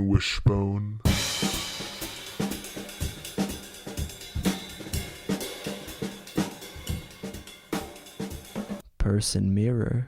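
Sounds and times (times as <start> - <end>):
drum kit playing steady beat: 1.1 - 8.8.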